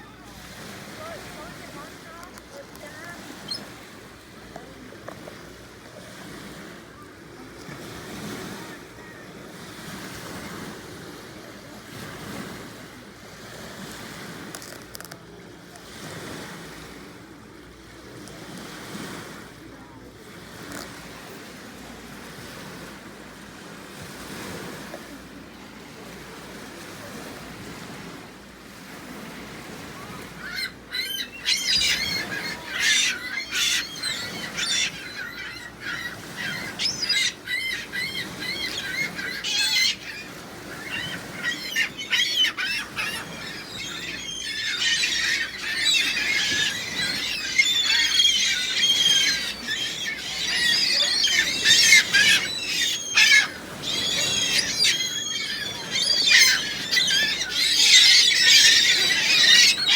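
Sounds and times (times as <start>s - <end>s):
gulls calling: 0.0s - 4.2s, 29.7s - 59.9s.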